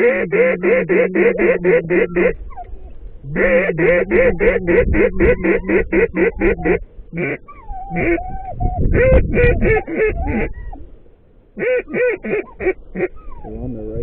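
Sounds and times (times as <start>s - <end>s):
duck quacking: 0.0s - 2.4s, 3.2s - 8.3s, 8.9s - 10.7s, 11.6s - 13.2s.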